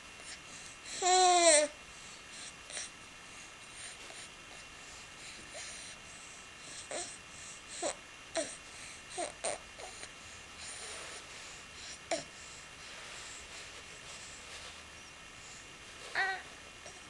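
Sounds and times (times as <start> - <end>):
baby cooing and babbling: 1.0 - 1.8, 6.9 - 10.1, 16.1 - 17.0.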